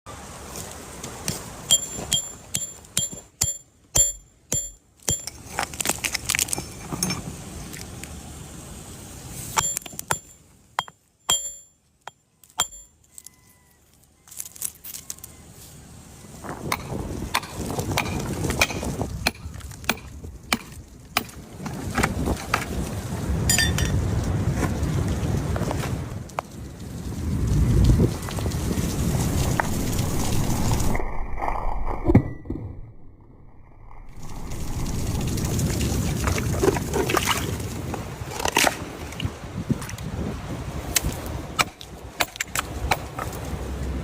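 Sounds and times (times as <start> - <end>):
sharp metallic taps: 1.7 - 5.4, 9.6 - 13.0
dense rustling noise: 27.0 - 31.0.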